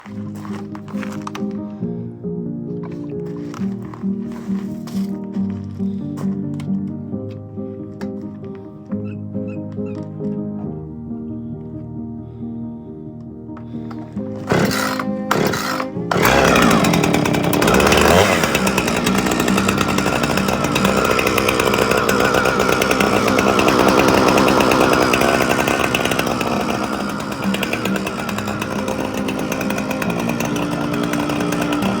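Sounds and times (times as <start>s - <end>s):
chainsaw engine revving: 0.0s - 1.6s, 13.9s - 32.0s.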